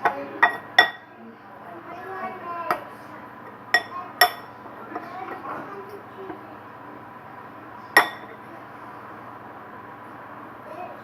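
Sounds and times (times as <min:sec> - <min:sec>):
utensil clinking against bowl: 0:00.0 - 0:01.0, 0:03.7 - 0:05.4, 0:08.0 - 0:08.4.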